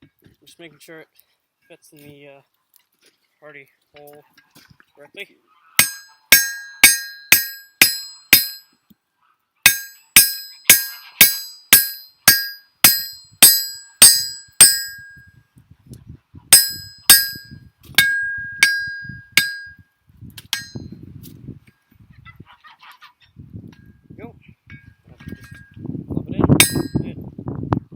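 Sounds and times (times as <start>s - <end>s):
hammer striking steel on anvil: 5.8s - 8.7s, 9.6s - 15.2s, 16.5s - 19.8s, 20.5s - 20.9s, 26.6s - 27.0s.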